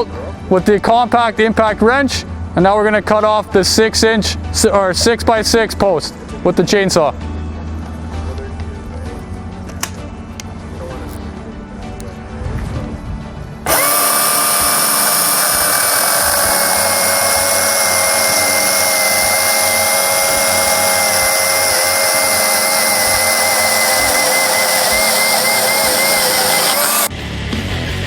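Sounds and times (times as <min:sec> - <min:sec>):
chainsaw high whine: 0:13.6 - 0:27.1.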